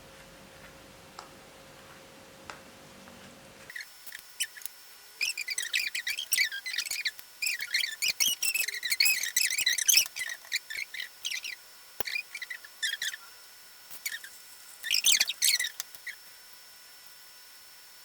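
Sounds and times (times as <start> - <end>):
small birds chirping: 3.7 - 16.2.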